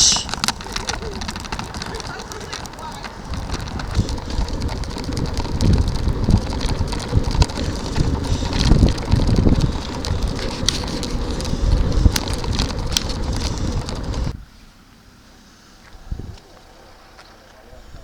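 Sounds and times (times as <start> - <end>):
light rattles and ticks: 0.0 - 14.4
wind buffeting microphone: 0.0 - 14.5.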